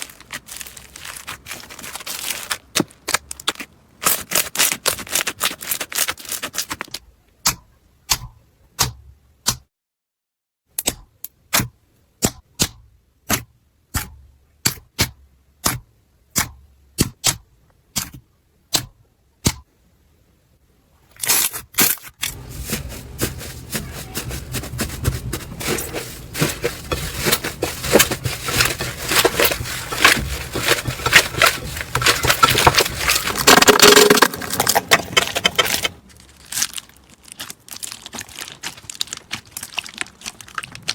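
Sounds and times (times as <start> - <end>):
slime crackling and crunching: 0.0 - 6.9, 22.2 - 40.9.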